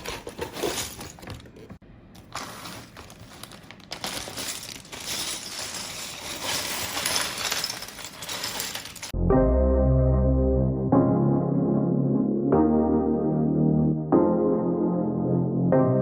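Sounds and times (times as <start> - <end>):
pieces rustling and crinkling: 0.0 - 9.2
plastic bricks clattering: 0.0 - 9.2.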